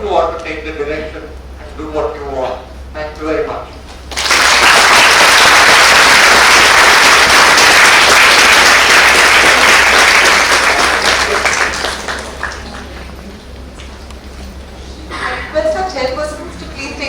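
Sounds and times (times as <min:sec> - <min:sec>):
audience clapping: 0:04.1 - 0:13.9.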